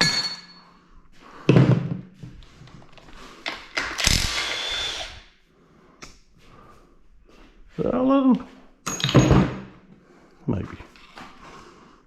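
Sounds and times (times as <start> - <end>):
power tool bursts: 3.8 - 5.3.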